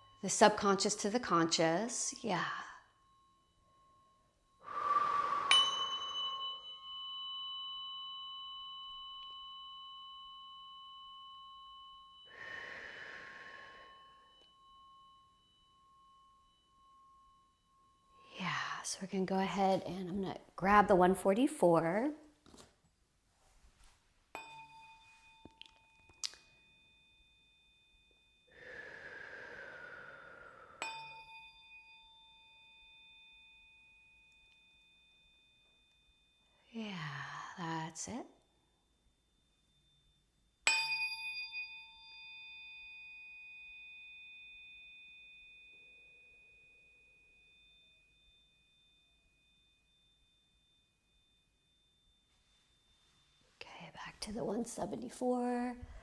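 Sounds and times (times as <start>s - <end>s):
tuning fork ringing: 0.0s - 20.2s, 24.3s - 37.5s, 38.3s - 56.0s
hazy ringing tone falling in pitch: 2.6s - 18.3s, 38.4s - 56.0s.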